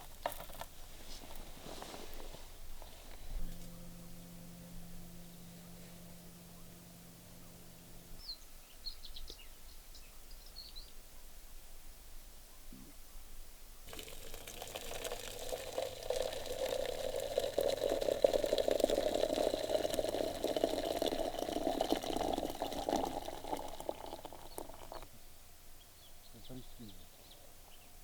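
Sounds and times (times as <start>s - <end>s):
liquid running and gurgling: 13.9s - 25.0s.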